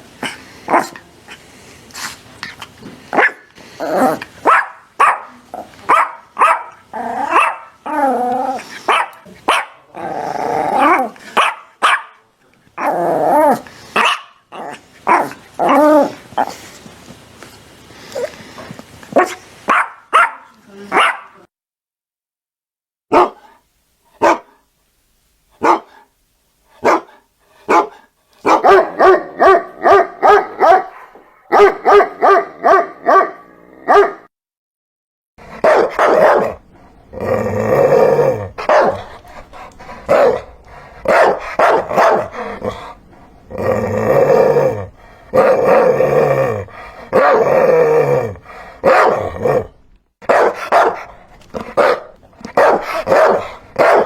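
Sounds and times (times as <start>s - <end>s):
dogs barking: 3.2s - 3.5s, 4.4s - 7.8s, 8.9s - 9.9s, 10.8s - 12.2s, 14.0s - 14.4s, 19.1s - 21.4s, 23.1s - 23.6s, 24.2s - 24.6s, 25.6s - 26.0s, 26.8s - 34.3s, 35.5s - 36.6s, 38.6s - 39.1s, 40.1s - 42.8s, 48.8s - 49.5s, 50.2s - 54.0s.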